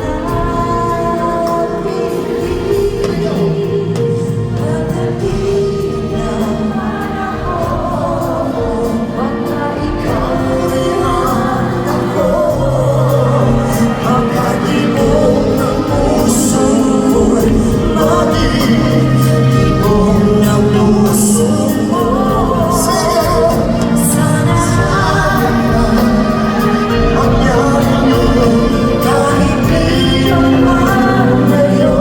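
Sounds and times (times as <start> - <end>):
singer with live band: 0.0 - 32.0.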